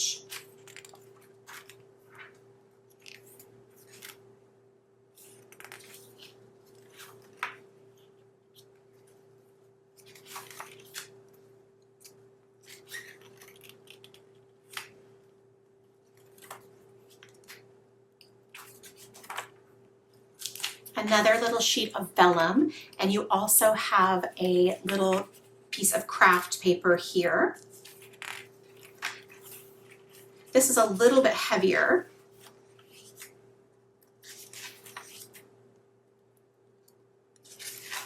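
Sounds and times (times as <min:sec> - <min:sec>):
faint steady hum: 0:00.0 - 0:38.0
paper pages rustling: 0:00.2 - 0:04.3, 0:05.1 - 0:09.2, 0:09.9 - 0:11.4, 0:12.0 - 0:15.0, 0:16.1 - 0:17.7, 0:18.5 - 0:19.6, 0:20.4 - 0:21.6, 0:27.6 - 0:31.4, 0:32.2 - 0:33.4, 0:34.1 - 0:35.5, 0:37.4 - 0:38.0.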